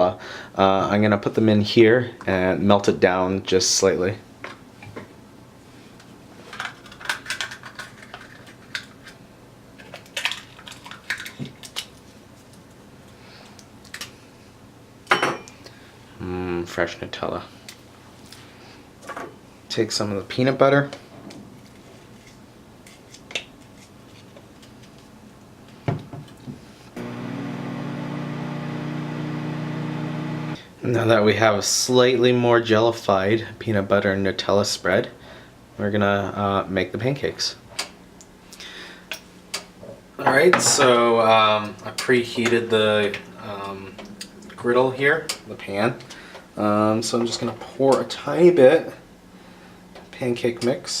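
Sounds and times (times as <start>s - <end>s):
microwave oven humming: 27.0s - 30.6s.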